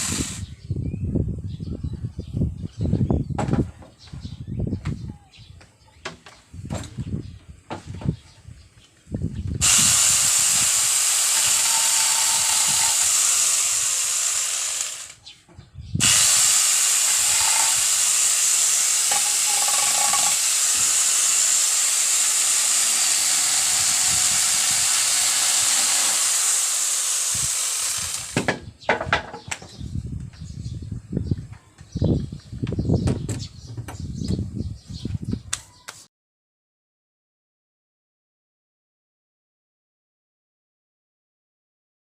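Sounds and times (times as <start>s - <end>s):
angle grinder whining: 0.0s - 0.5s, 9.6s - 15.2s, 16.0s - 28.5s.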